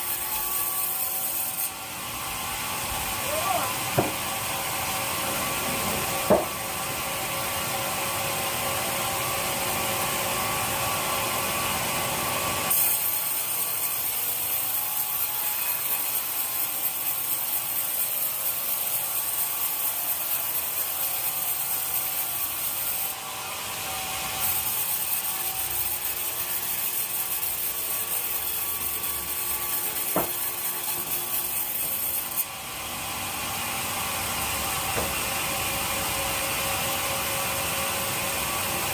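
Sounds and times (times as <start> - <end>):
sharp knocks: 4.0 - 4.2, 6.3 - 6.5, 34.9 - 35.2
saw blade hissing through wood: 24.3 - 32.5.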